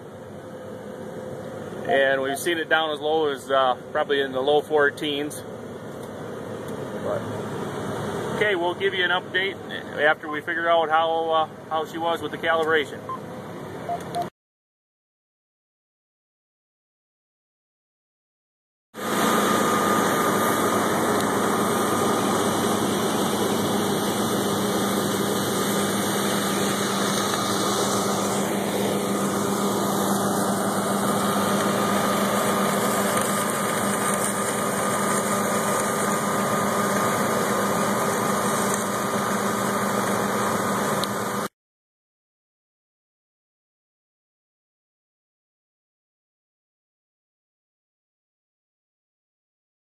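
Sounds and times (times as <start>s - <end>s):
diesel farm machine engine: 0.0s - 14.2s, 19.0s - 41.5s.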